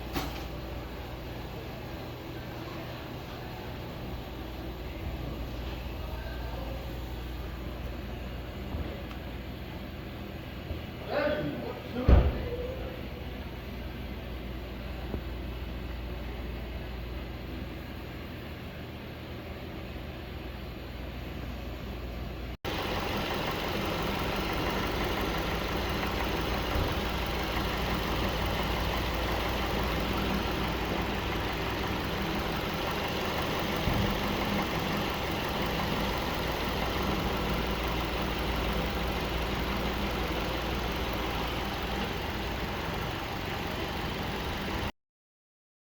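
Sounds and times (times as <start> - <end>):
car engine idling: 22.7 - 44.9.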